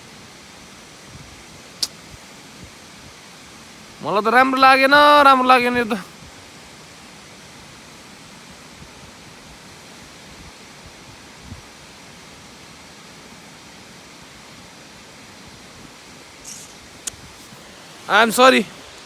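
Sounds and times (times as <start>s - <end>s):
waterfall roaring: 3.2s - 6.2s, 16.1s - 19.0s.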